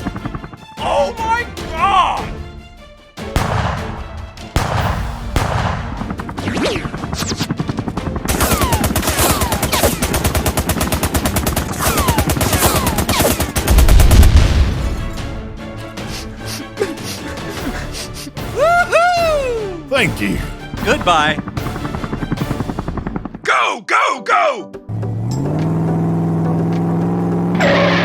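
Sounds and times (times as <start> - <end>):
background music: 0.0 - 28.0
gunshots: 3.3 - 15.2
machine-gun fire: 3.4 - 7.6, 8.2 - 15.0
loud low boom: 13.7 - 15.1.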